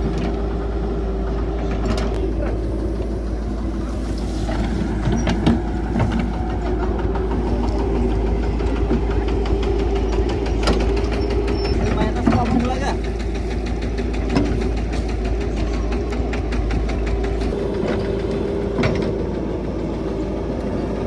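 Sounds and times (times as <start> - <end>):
excavator diesel engine running: 0.0 - 21.0
machine knocks and clanks: 1.2 - 21.0.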